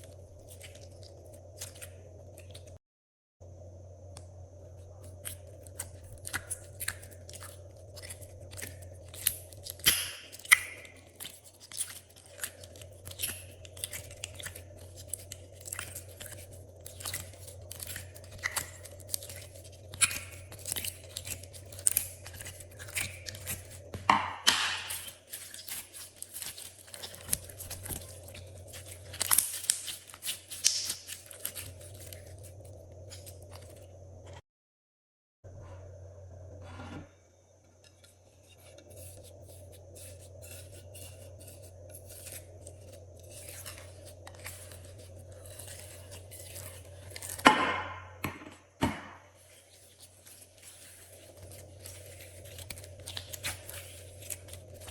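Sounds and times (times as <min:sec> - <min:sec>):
steady low hum: 0:00.0 - 0:02.8, 0:03.4 - 0:34.4, 0:35.5 - 0:54.9
slime clicking and crackling: 0:05.0 - 0:33.8, 0:39.0 - 0:47.9, 0:49.4 - 0:54.9.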